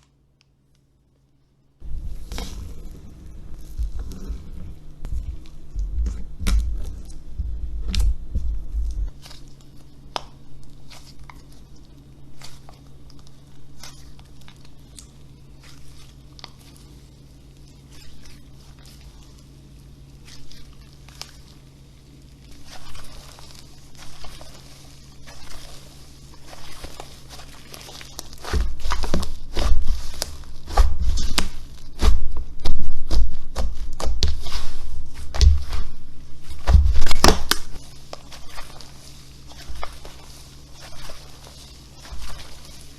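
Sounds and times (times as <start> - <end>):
soft squelching thuds: 1.8 - 9.4, 26.4 - 38.8.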